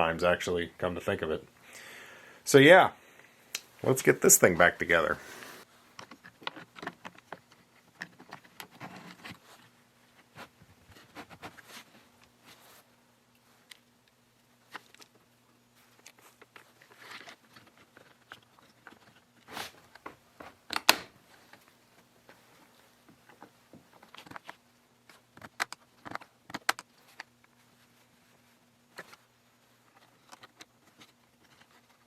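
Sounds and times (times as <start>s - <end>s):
plastic and metal parts clicking: 6.0s - 9.4s, 23.3s - 27.5s, 29.8s - 32.0s.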